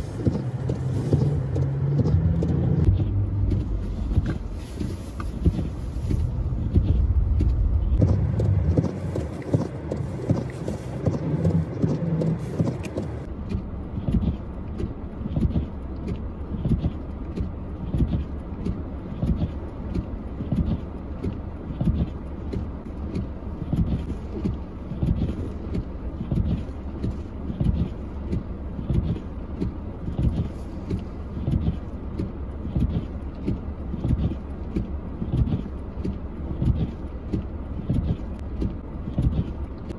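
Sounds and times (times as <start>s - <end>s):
vehicle rumbling: 0.0s - 39.9s
footsteps crunching through snow: 3.5s - 13.3s.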